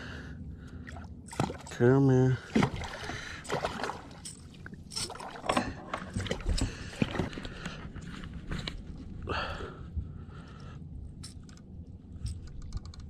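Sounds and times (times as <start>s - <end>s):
water splashing: 0.9s - 1.8s, 2.4s - 6.5s.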